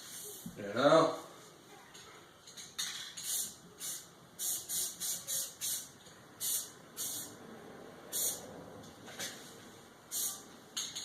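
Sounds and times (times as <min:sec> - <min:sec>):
spray paint can hissing: 0:03.2 - 0:07.4, 0:08.1 - 0:08.4, 0:10.1 - 0:10.4.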